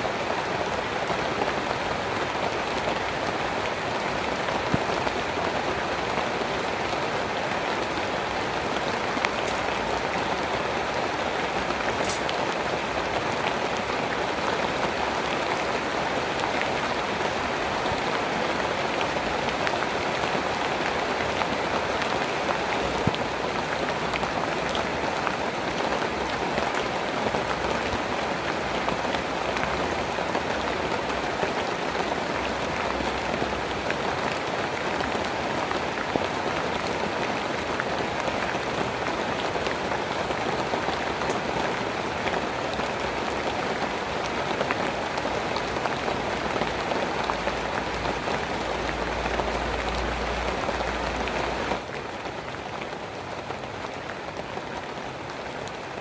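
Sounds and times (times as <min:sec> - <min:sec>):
rain pattering: 0:00.0 - 0:56.0.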